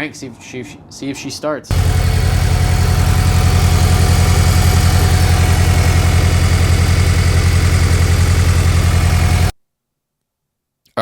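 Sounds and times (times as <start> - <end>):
car engine idling: 1.7 - 9.5.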